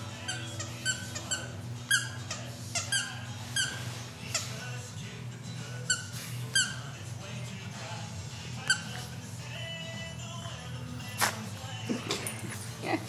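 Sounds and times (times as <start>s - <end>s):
steady low hum: 0.0s - 13.0s
squeaky dog toy squeaking: 0.1s - 4.8s, 5.7s - 7.0s, 8.6s - 9.2s.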